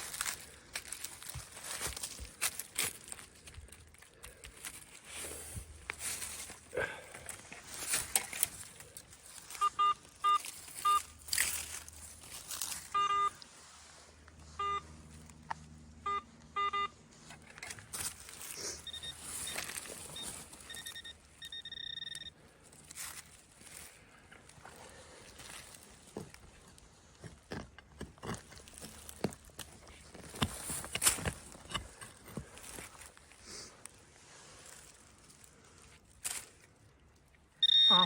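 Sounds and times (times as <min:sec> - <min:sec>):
digging in soil: 0:00.0 - 0:15.8, 0:16.6 - 0:21.7, 0:22.4 - 0:38.0
metal detector beeping: 0:09.5 - 0:11.2, 0:12.9 - 0:13.4, 0:14.5 - 0:14.9, 0:16.0 - 0:17.0, 0:18.7 - 0:22.4, 0:37.6 - 0:38.0.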